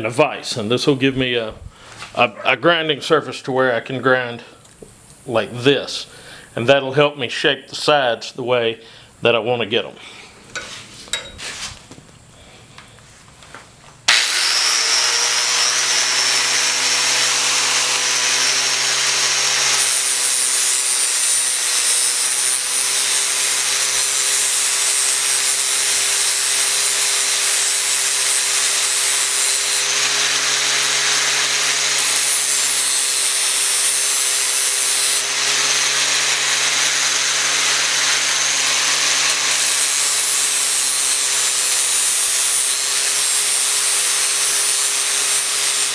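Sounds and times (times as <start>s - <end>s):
angle grinder grinding steel: 14.1s - 45.9s.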